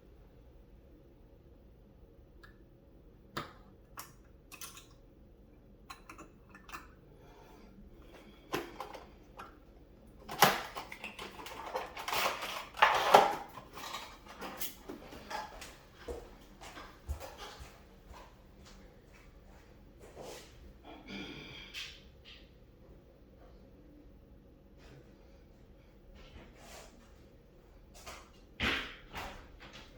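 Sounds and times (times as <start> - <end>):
computer parts clattering: 10.2 - 15.5.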